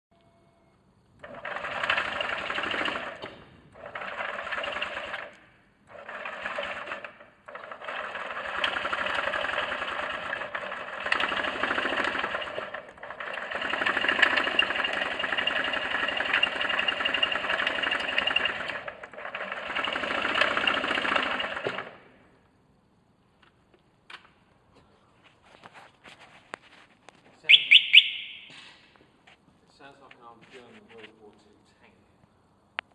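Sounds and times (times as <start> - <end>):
scooter engine clattering: 1.2 - 5.3, 5.9 - 22.0.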